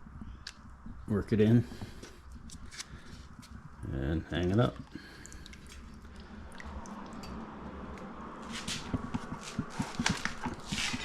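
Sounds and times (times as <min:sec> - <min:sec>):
wet plaster squishing and dripping: 0:01.7 - 0:11.0
small wet clicks: 0:04.5 - 0:11.0.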